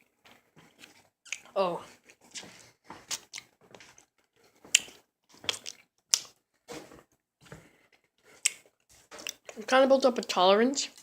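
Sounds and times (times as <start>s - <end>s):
mouth sucking and chewing candy: 0.3s - 6.4s, 7.9s - 9.6s
wet mouth clicks and smacks: 0.8s - 1.5s, 4.7s - 6.4s, 8.3s - 9.6s.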